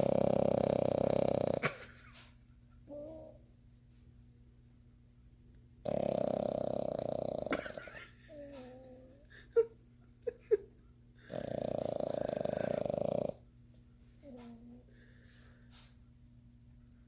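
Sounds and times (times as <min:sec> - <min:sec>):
dog snoring: 0:00.0 - 0:01.8, 0:05.8 - 0:09.0, 0:11.2 - 0:13.4.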